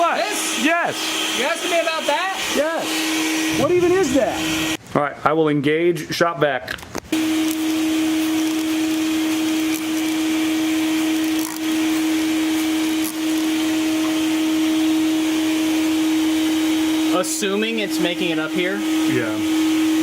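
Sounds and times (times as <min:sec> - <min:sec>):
shop vac whining: 0:00.0 - 0:04.8, 0:07.0 - 0:20.0.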